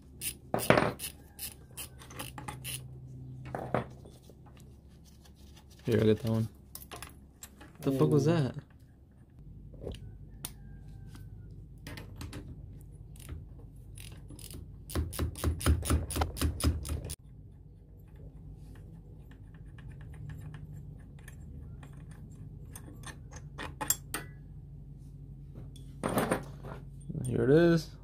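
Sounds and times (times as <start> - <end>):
ratchet wrench clicking: 1.0 - 2.9, 14.0 - 17.1.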